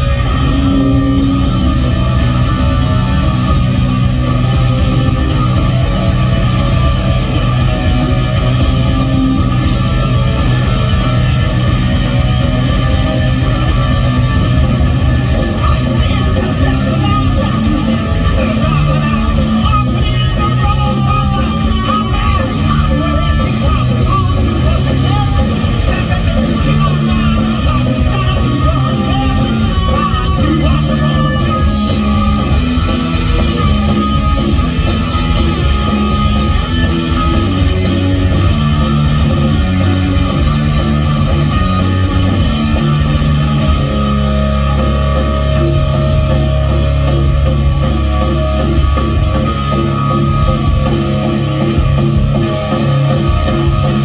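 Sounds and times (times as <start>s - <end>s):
punk rock band playing live: 0.0s - 54.0s.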